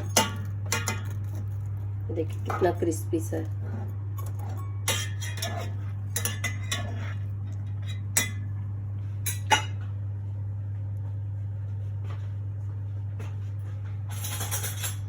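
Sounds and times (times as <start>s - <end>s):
cutlery clinking against dishes: 4.2s - 8.4s, 14.1s - 15.0s.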